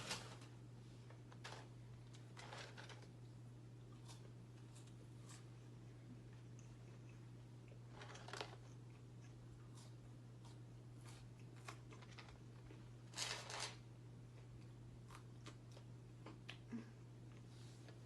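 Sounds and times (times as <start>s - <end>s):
paper packaging crinkling: 0.0s - 0.5s, 13.1s - 13.8s.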